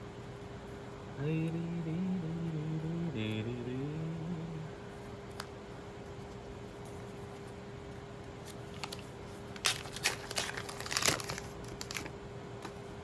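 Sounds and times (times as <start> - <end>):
foil wrapper crinkling and tearing: 8.7 - 12.1.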